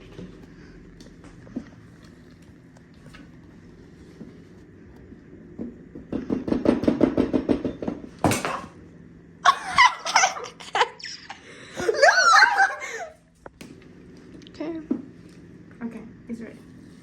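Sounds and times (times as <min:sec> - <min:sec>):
people laughing: 0:09.4 - 0:13.2.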